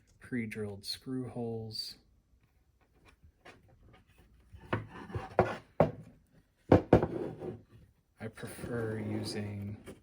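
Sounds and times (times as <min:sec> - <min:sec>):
wood rubbing and scraping: 0:08.4 - 0:10.0.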